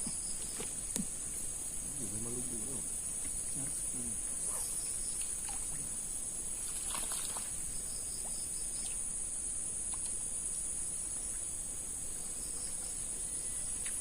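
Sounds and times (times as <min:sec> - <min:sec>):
insects droning: 0:00.0 - 0:14.0
cluster of clicks: 0:09.9 - 0:10.2.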